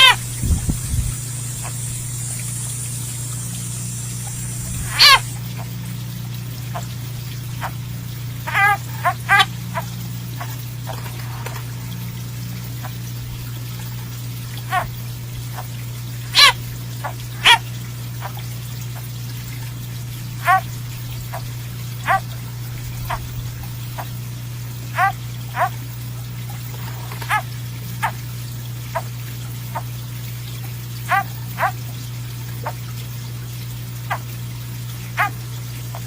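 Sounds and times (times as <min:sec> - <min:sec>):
frog distress squeals: 0:00.0 - 0:00.4, 0:03.5 - 0:05.4, 0:07.6 - 0:07.8, 0:08.4 - 0:11.6, 0:14.6 - 0:14.9, 0:16.3 - 0:17.6, 0:20.4 - 0:20.7, 0:21.3 - 0:22.3, 0:23.0 - 0:24.1, 0:24.9 - 0:25.8, 0:26.7 - 0:28.2, 0:31.1 - 0:31.8, 0:35.2 - 0:36.0
steady low hum: 0:00.0 - 0:36.0.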